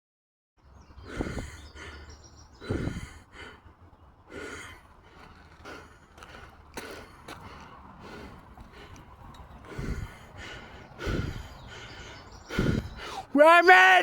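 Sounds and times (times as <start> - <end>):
person breathing hard: 1.0 - 13.3.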